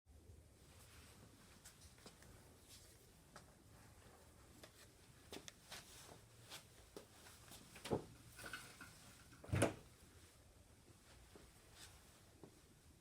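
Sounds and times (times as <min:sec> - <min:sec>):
objects clicking and knocking: 0:08.3 - 0:09.6.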